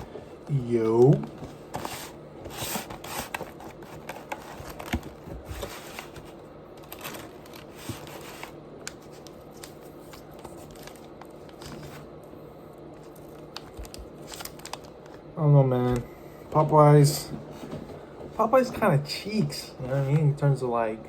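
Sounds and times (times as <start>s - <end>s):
packaging crinkling and rustling: 0.9s - 12.2s, 13.0s - 17.8s.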